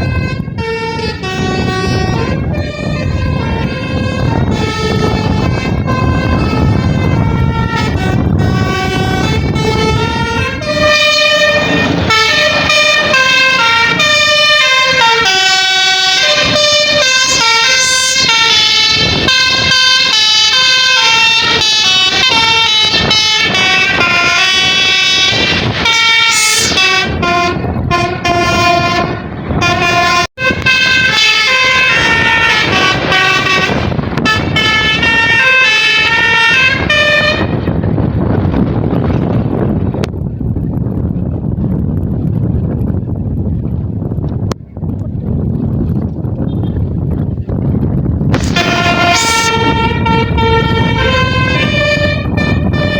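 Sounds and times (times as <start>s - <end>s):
low rumble: 0.0s - 23.2s, 36.9s - 52.9s
air horn playing a melody: 0.0s - 37.6s, 48.4s - 52.9s.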